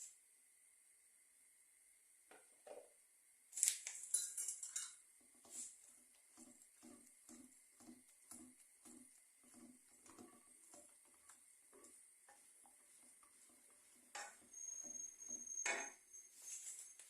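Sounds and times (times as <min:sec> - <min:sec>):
spatula scraping a pan: 0:04.6 - 0:17.0.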